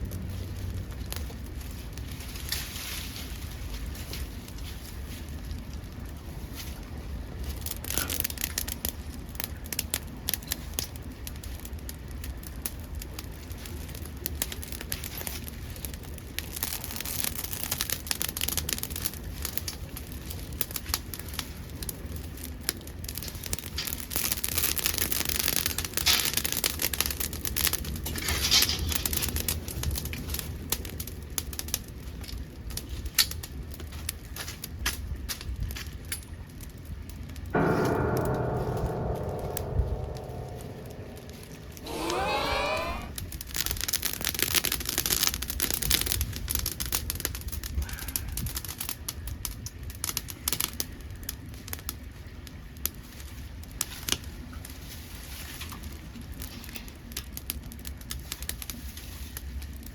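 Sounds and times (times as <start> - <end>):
wood crackling and popping: 0.0 - 36.3.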